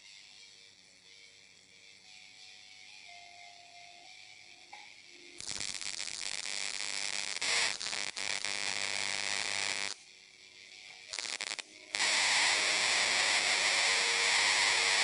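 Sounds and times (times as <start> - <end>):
high-voltage arc buzzing and crackling: 5.4 - 15.0.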